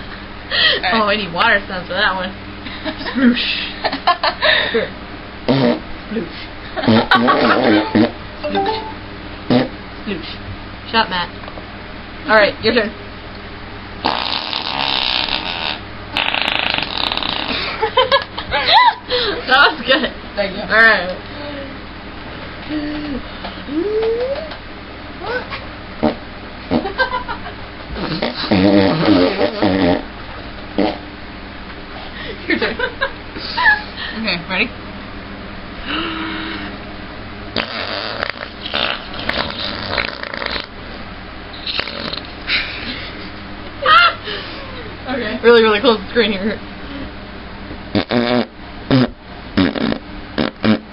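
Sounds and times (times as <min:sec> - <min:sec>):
person making fart noises: 0:05.5 - 0:05.9, 0:06.8 - 0:08.2, 0:09.5 - 0:09.8, 0:14.0 - 0:17.8, 0:26.0 - 0:27.0, 0:28.0 - 0:30.1, 0:30.8 - 0:31.0, 0:37.6 - 0:40.7, 0:41.6 - 0:42.3, 0:47.9 - 0:50.9.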